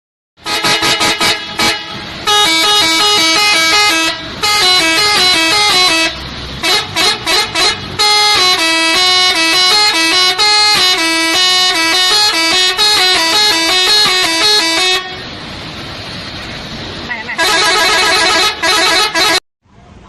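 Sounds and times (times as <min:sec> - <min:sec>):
multi-tone musical horn tune: 0:00.4 - 0:15.2, 0:17.4 - 0:19.4.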